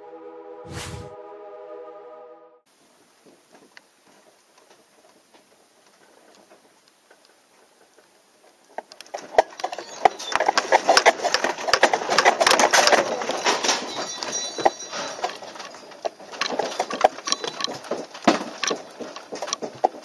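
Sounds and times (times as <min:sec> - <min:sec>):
objects rattling in an earthquake: 0:09.0 - 0:20.0.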